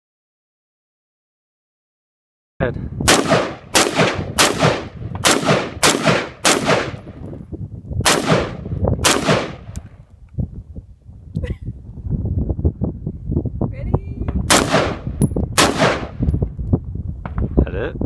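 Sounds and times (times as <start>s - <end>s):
rifle shots with echo: 3.1s - 7.2s, 8.0s - 9.8s, 14.5s - 16.3s.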